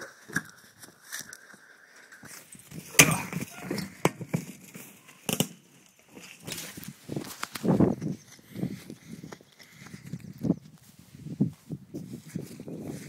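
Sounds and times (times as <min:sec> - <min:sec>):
footsteps crunching on dry vegetation: 0:04.5 - 0:13.0.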